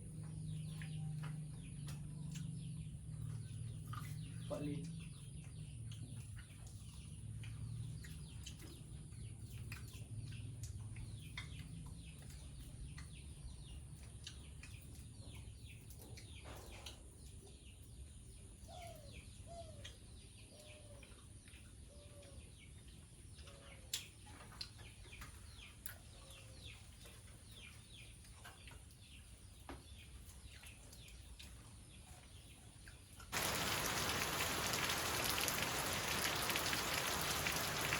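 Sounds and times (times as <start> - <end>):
heavy rain: 33.3 - 37.9
birds chirping: 33.4 - 37.9.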